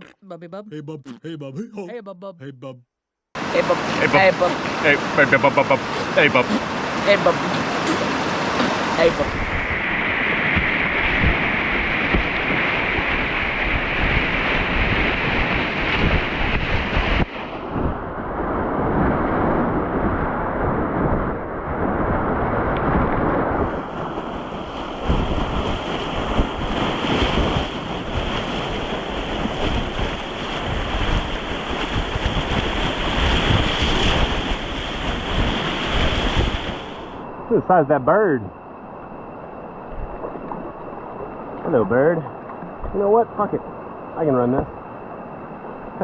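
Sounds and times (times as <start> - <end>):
rushing whitewater rapids: 3.4 - 9.4
wind buffeting microphone: 5.9 - 37.2.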